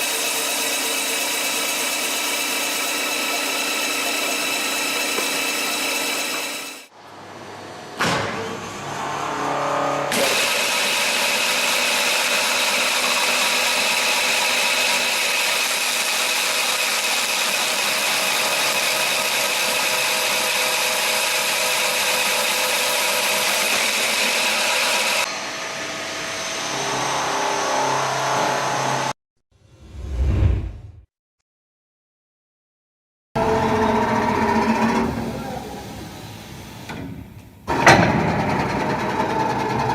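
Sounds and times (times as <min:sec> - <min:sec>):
woodworking machine whine: 0:00.0 - 0:06.9, 0:08.8 - 0:29.2.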